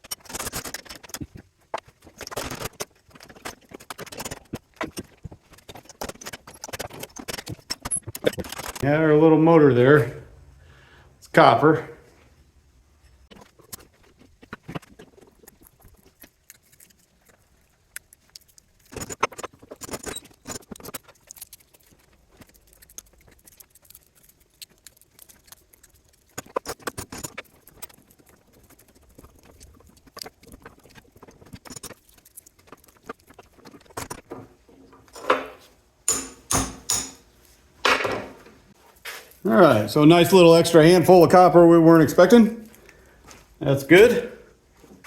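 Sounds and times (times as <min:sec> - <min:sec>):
clicks and scrapes: 0:00.0 - 0:08.8, 0:13.0 - 0:37.2.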